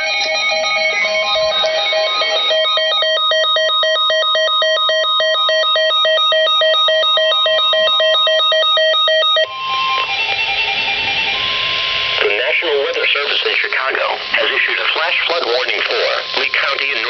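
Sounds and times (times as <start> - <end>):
fast warbling two-pitch beep: 0.0 - 9.5
steady alert tone: 0.0 - 12.8.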